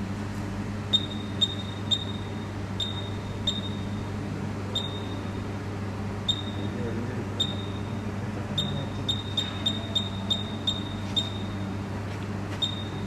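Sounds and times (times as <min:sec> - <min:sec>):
low electrical hum: 0:00.0 - 0:13.0
short high electronic beeps: 0:01.0 - 0:04.0, 0:04.8 - 0:05.3, 0:06.3 - 0:06.7, 0:07.4 - 0:08.0, 0:08.6 - 0:11.6, 0:12.6 - 0:13.0.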